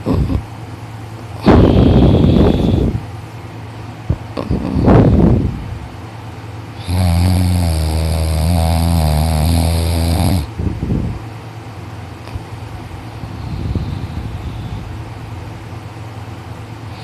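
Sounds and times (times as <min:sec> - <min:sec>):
loud snoring: 0:00.0 - 0:00.4, 0:01.4 - 0:03.0, 0:04.4 - 0:05.2, 0:06.8 - 0:10.5.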